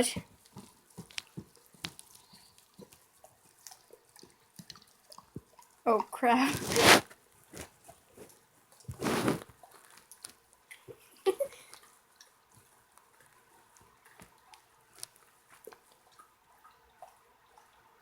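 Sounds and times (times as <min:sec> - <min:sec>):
dog licking and lip-smacking: 0:01.0 - 0:06.1.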